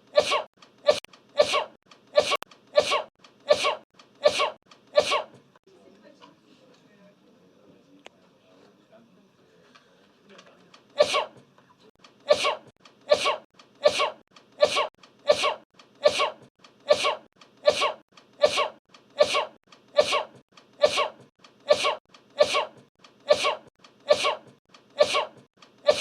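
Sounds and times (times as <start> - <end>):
person sneezing: 0.0 - 5.4, 11.0 - 11.4, 12.3 - 26.0.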